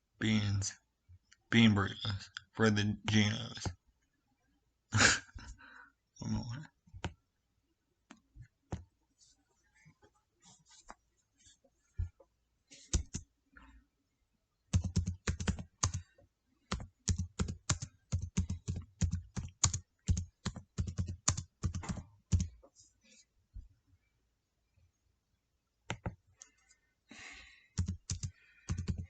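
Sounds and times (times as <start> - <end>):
computer keyboard typing: 12.9 - 13.2, 14.7 - 16.1, 16.7 - 22.6, 25.9 - 26.2, 27.7 - 29.0.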